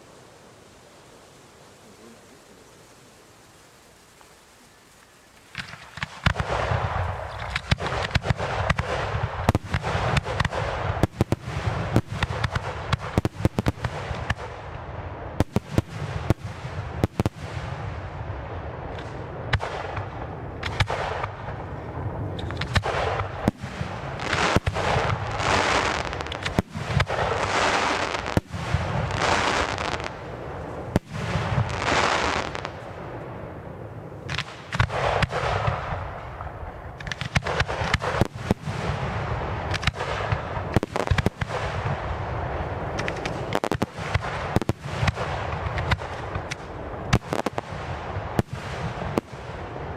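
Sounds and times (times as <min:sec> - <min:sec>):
fireworks crackling: 0:00.0 - 0:49.9
fireworks bangs: 0:05.4 - 0:49.9.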